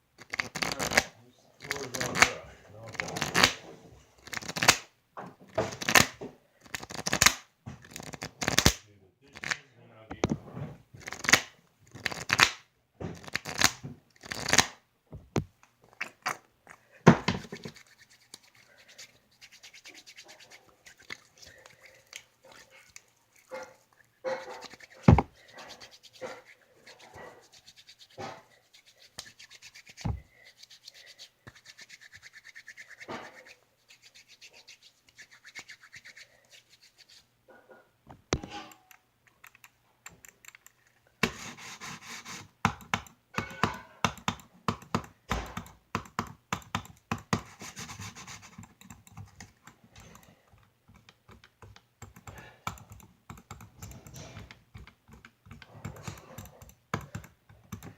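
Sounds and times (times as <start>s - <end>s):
scratching: 15.8s - 37.3s.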